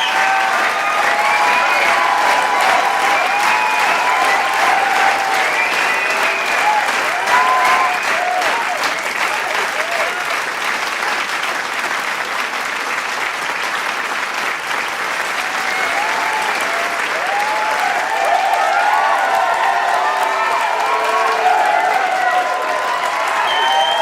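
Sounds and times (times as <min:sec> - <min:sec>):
cheers and shouts: 0:00.0 - 0:10.4, 0:15.3 - 0:24.0
crowd applauding: 0:00.0 - 0:24.0.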